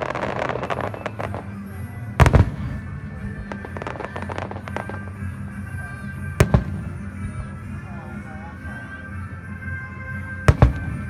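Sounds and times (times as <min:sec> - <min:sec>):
firework booms: 0:00.0 - 0:05.3, 0:06.2 - 0:07.8, 0:10.5 - 0:11.0
fireworks crackling: 0:00.0 - 0:08.9, 0:10.4 - 0:11.0.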